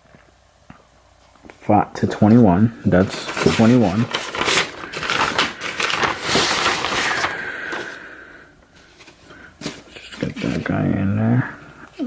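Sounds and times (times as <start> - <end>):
wires rustling and clicking: 1.2 - 7.9.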